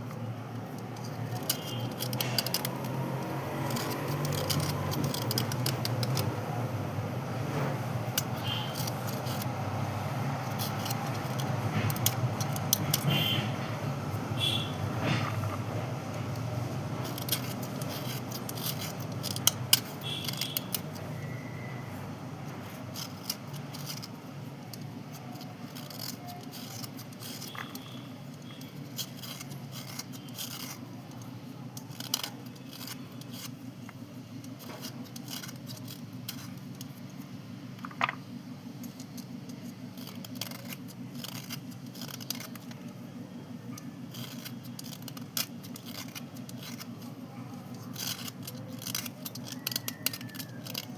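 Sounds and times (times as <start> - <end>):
slate pencils scraping: 0.0 - 50.9
sharp clicks of pieces knocking: 37.8 - 42.9.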